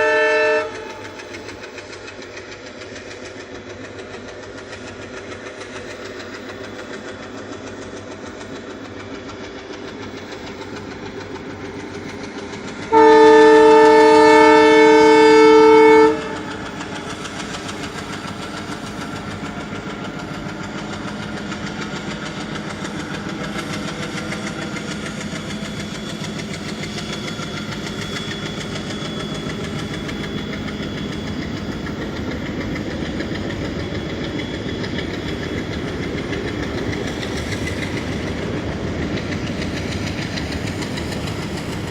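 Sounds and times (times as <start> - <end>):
train horn blast: 0.0 - 1.1, 12.9 - 16.7
train running: 0.0 - 41.9.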